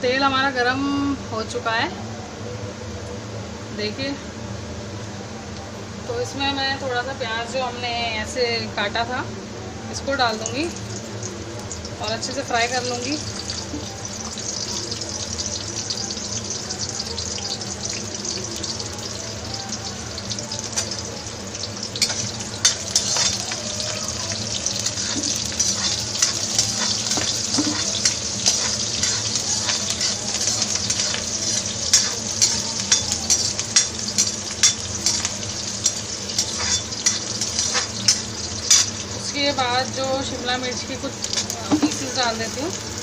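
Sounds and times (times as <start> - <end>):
onion sizzling in hot oil: 6.0 - 43.0
spatula scraping a pan: 24.7 - 35.3, 35.9 - 38.9.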